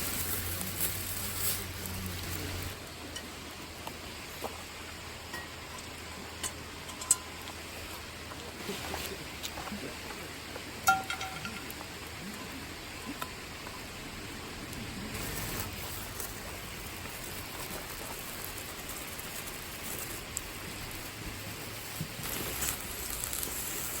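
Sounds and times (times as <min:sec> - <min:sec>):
steady hiss: 0:00.0 - 0:24.0
sharp metallic clink: 0:10.9 - 0:11.7.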